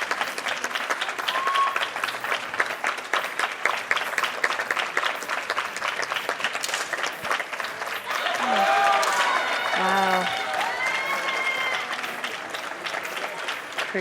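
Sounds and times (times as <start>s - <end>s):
crowd clapping in rhythm: 0.0s - 14.0s.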